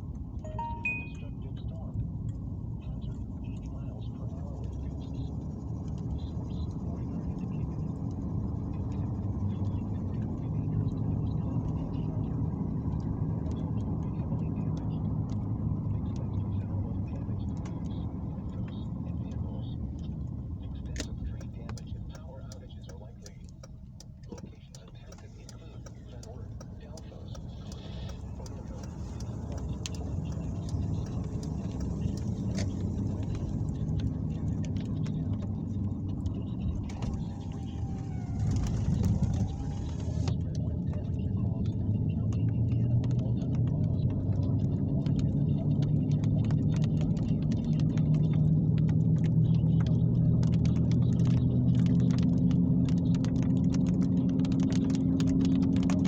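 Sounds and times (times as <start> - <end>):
steady low hum: 0.0 - 52.3
faint clicks: 20.8 - 56.0
rain drops striking: 21.3 - 56.0.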